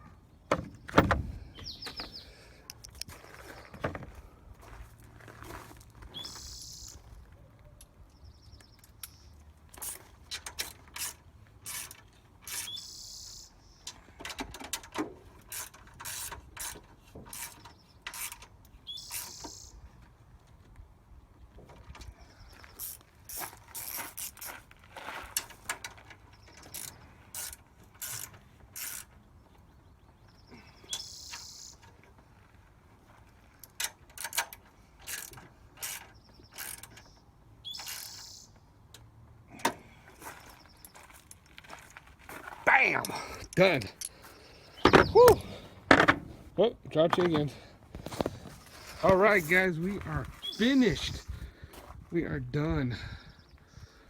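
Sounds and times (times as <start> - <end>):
ratchet wrench clicking: 9.8 - 12.9, 15.4 - 19.4, 22.8 - 24.6, 26.6 - 29.1, 33.6 - 37.0, 37.7 - 38.3.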